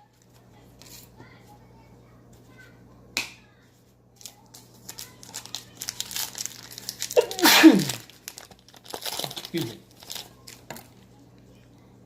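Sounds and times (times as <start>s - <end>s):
wrapper crinkling and tearing: 4.2s - 11.0s.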